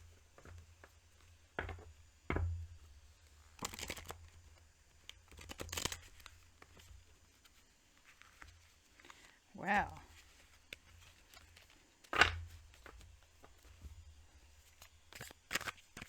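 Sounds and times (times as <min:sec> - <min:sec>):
cards shuffling rustle: 0:03.5 - 0:04.3, 0:05.0 - 0:16.0.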